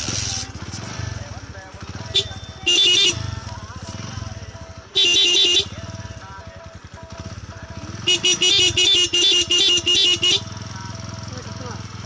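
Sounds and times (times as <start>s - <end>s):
motorcycle engine idling: 0.0s - 12.0s
motorcycle horn blasts: 1.9s - 3.5s, 4.8s - 6.0s, 7.9s - 10.7s.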